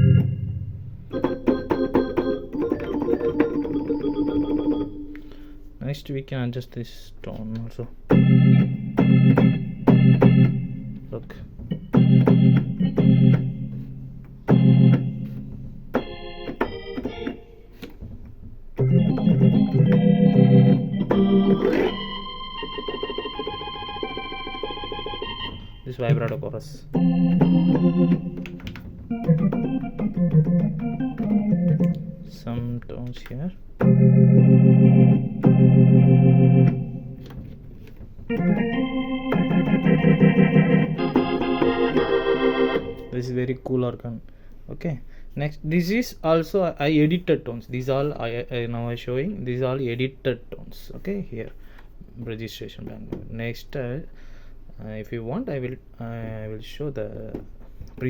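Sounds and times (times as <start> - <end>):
organ keyboard playing chords: 0.0 - 5.7, 8.0 - 18.0, 18.7 - 32.7, 33.6 - 43.6.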